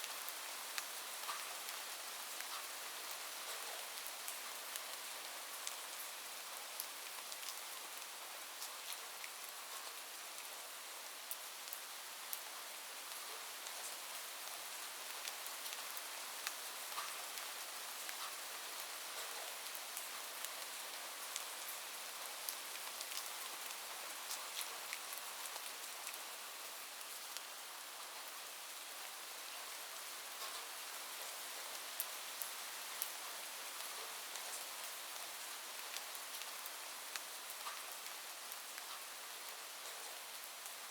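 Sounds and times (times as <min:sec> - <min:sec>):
light rain falling: 0:00.0 - 0:40.9
raindrops ticking on surfaces: 0:00.0 - 0:40.9.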